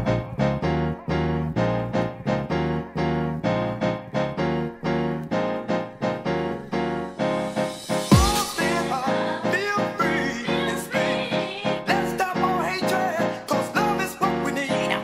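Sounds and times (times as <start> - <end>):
bass line: 0.0 - 4.8, 6.6 - 9.3
piano playing repeated chords: 0.0 - 15.0.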